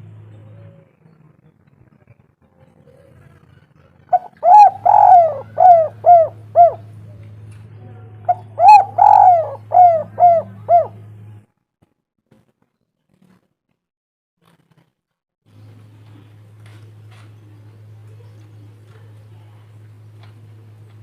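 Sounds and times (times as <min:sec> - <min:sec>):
steady low hum: 0:00.0 - 0:11.5, 0:15.5 - 0:21.0
dove cooing: 0:04.0 - 0:07.3, 0:08.3 - 0:11.1.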